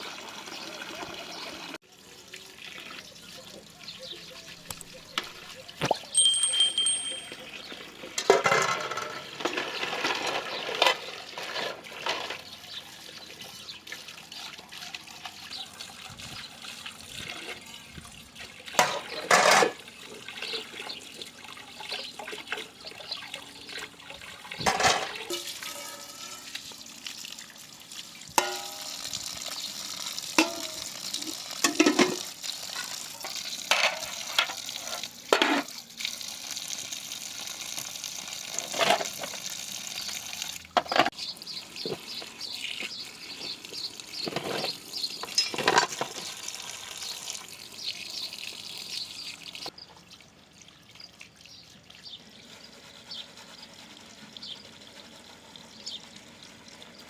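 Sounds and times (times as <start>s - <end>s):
water splashing and running: 0.0s - 57.0s
utensils and dishes clinking: 4.7s - 12.6s, 18.8s - 19.9s, 24.6s - 26.7s, 28.4s - 29.1s, 30.4s - 35.7s, 44.2s - 46.3s.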